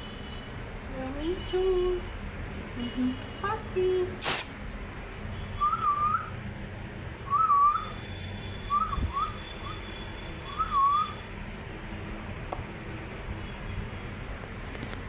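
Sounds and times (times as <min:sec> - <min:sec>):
sliding whistles: 0:05.5 - 0:06.4, 0:07.2 - 0:11.2.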